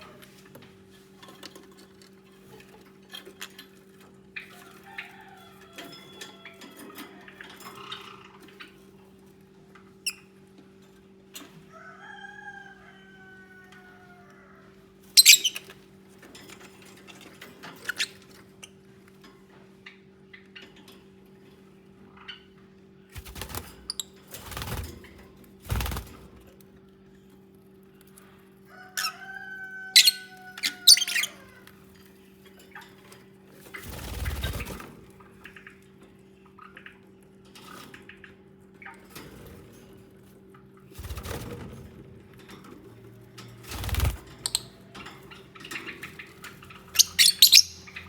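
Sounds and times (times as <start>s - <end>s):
birds chirping shrilly: 15.2s - 15.7s, 29.9s - 31.5s, 46.7s - 48.0s.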